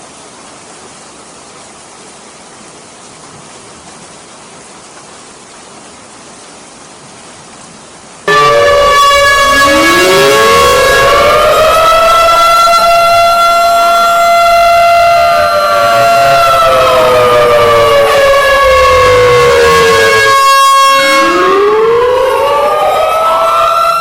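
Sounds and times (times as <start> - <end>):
steady rain: 0.0 - 24.0
tornado warning sirens wailing: 8.2 - 24.0.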